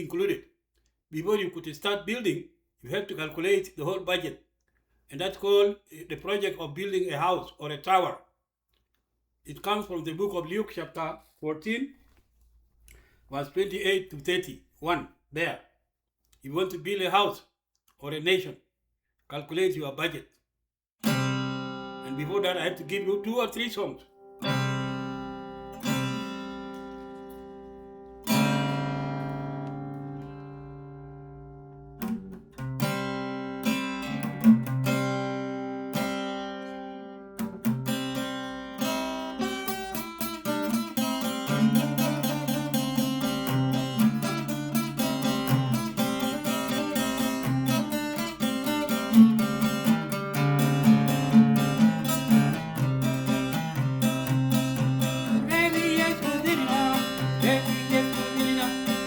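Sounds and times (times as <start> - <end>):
acoustic guitar strumming: 21.0 - 59.0.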